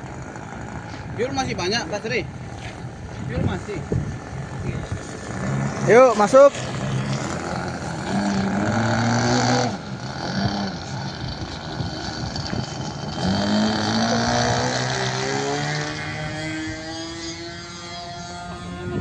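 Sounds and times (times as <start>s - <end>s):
small engine buzzing: 4.5s - 19.0s.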